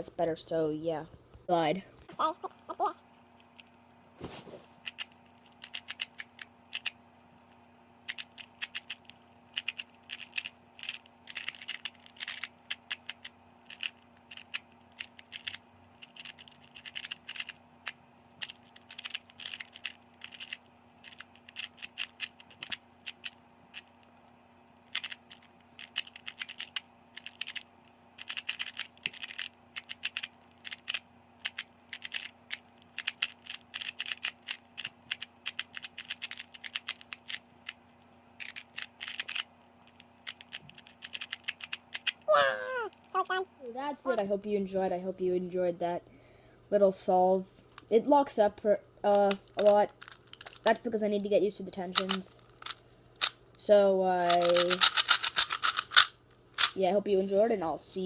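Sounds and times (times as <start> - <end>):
puzzle cube clicking: 4.8 - 7.0, 8.1 - 24.0, 24.9 - 37.8, 38.4 - 43.4, 52.0 - 53.4, 54.2 - 56.8.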